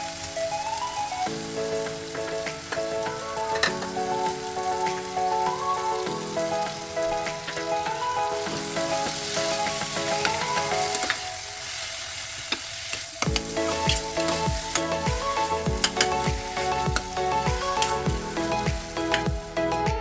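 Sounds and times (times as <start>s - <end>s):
background music with melody: 0.0s - 12.0s, 13.2s - 20.0s
food sizzling in a pan: 0.0s - 20.0s
deep regular beat: 13.3s - 20.0s.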